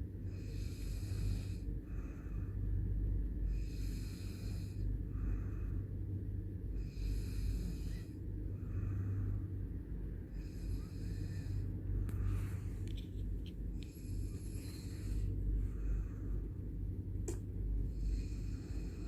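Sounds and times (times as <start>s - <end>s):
soft breath: 0.0s - 19.0s
man snoring: 0.3s - 1.7s, 3.5s - 4.9s, 6.8s - 8.2s, 10.3s - 11.7s, 13.8s - 15.3s, 17.9s - 19.0s.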